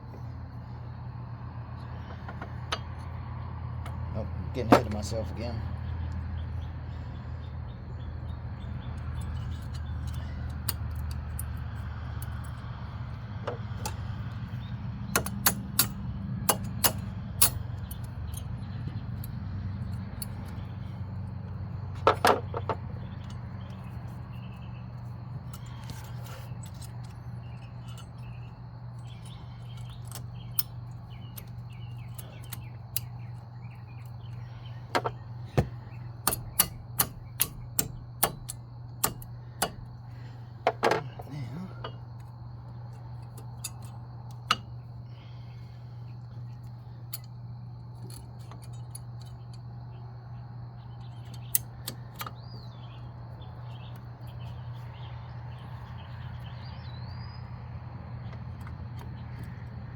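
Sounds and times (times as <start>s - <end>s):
steady low hum: 0.0s - 59.9s
metal parts clicking: 9.0s - 14.5s, 15.1s - 24.2s, 25.0s - 44.8s, 46.3s - 49.7s, 51.0s - 52.8s.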